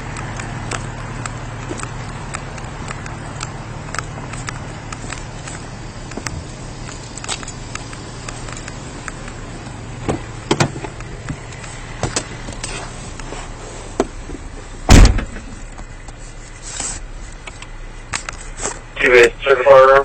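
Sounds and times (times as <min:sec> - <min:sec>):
vehicle idling hum: 0:00.0 - 0:20.0
small clicks and knocks: 0:00.1 - 0:09.4
car door shutting: 0:10.0 - 0:11.4, 0:12.0 - 0:15.7.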